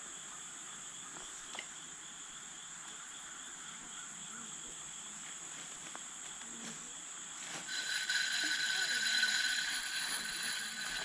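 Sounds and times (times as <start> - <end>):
high-pitched insect chorus: 6.9 - 11.0.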